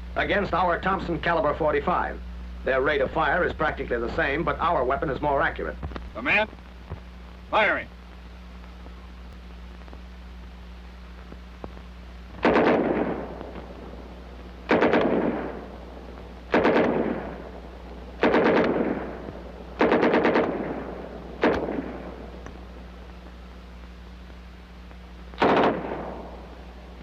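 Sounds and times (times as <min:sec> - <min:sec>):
steady low hum: 0:00.0 - 0:27.0
submachine gun bursts: 0:12.4 - 0:13.2, 0:14.7 - 0:15.6, 0:16.5 - 0:17.3, 0:18.2 - 0:19.1, 0:19.8 - 0:22.0, 0:25.4 - 0:26.2.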